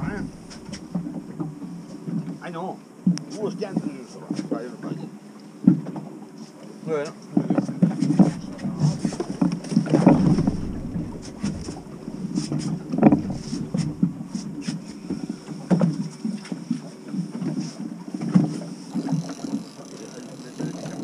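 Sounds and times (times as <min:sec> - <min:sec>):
wind on microphone: 0:00.0 - 0:01.4, 0:08.0 - 0:16.2
water slapping against hull: 0:00.0 - 0:02.3, 0:07.5 - 0:17.6.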